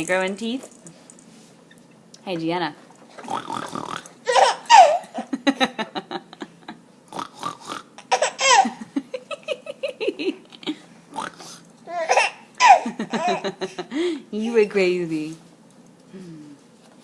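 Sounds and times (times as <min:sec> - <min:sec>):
adult oinking like a pig: 0:03.2 - 0:04.2, 0:11.1 - 0:11.6
baby laughing and squealing: 0:04.2 - 0:05.2, 0:08.1 - 0:08.8, 0:11.9 - 0:13.4.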